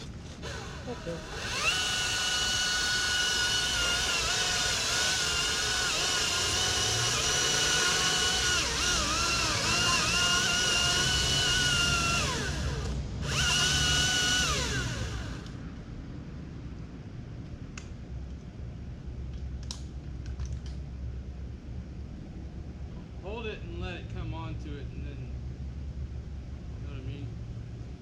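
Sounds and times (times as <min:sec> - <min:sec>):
chainsaw cutting wood: 0:00.4 - 0:15.5.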